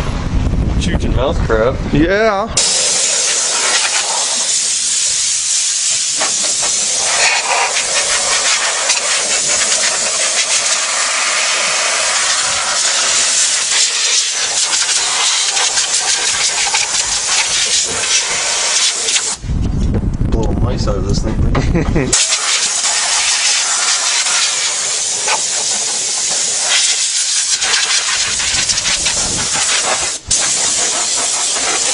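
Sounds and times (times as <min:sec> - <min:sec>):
compressed air hissing: 0:02.6 - 0:19.4, 0:22.1 - 0:31.9.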